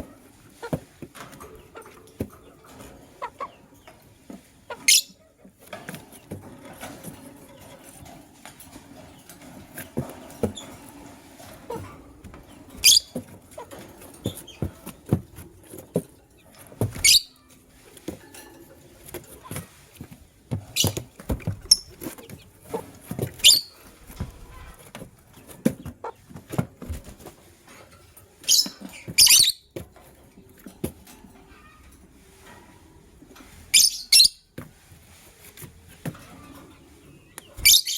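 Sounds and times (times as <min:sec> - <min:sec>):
lovebirds chirping: 0:00.0 - 0:05.4, 0:09.0 - 0:15.0, 0:15.7 - 0:17.7, 0:20.6 - 0:24.8, 0:28.3 - 0:29.8, 0:33.6 - 0:34.6, 0:36.3 - 0:37.9.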